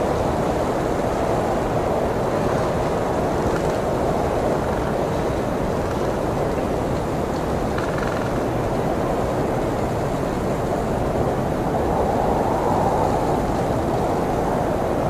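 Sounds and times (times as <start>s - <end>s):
snowstorm wind blowing: 0.0s - 15.0s.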